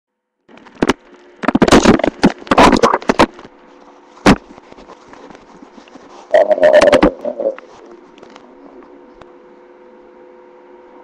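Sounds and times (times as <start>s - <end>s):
stomach growling: 0.6s - 3.3s, 6.1s - 9.0s.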